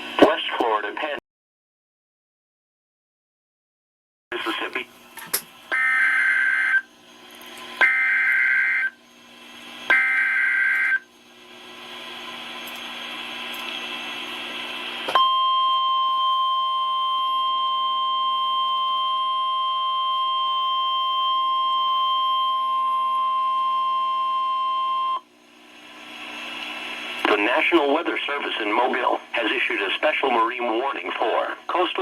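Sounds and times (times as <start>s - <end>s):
weather radio alarm tone: 5.7s - 6.9s, 7.8s - 8.9s, 9.9s - 11.0s.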